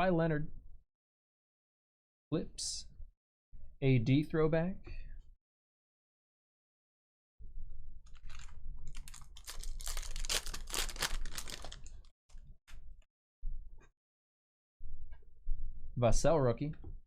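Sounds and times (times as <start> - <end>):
cards rustling: 8.1 - 12.1
foil wrapper tearing and crinkling: 8.1 - 12.1.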